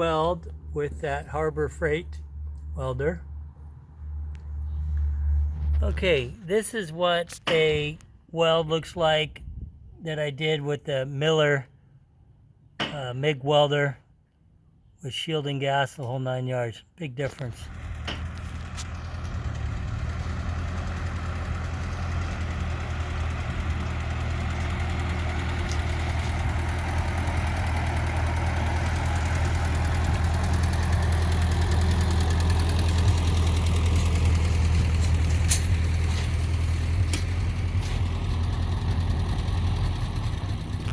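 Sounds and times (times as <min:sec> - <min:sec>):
engine idling: 0:17.5 - 0:40.9.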